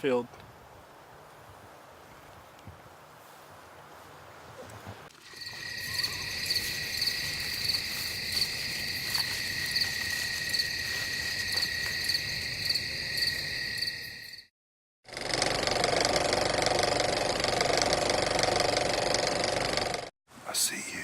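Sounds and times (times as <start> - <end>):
insects chirping and trilling: 5.2 - 14.5
pulsing insect call: 5.2 - 14.5.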